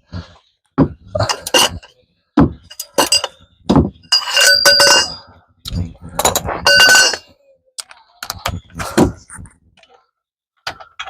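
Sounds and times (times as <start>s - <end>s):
metal tools clanking: 1.2s - 1.9s, 2.6s - 3.4s, 4.0s - 7.3s.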